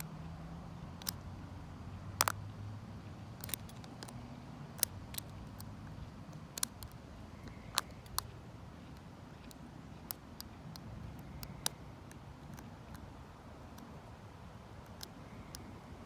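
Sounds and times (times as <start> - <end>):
low steady rumble: 0.0 - 16.0
lock pick clicks in cylinder: 3.4 - 4.2, 6.3 - 8.3.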